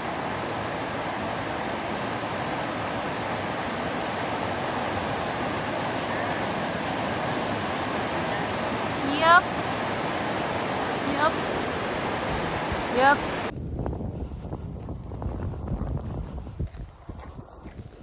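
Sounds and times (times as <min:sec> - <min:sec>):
river water rushing: 0:00.0 - 0:13.5.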